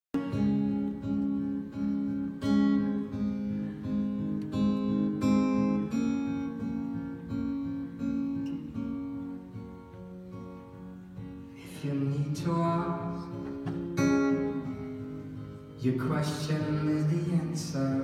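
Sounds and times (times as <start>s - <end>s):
acoustic guitar strumming chords: 0.2s - 18.0s.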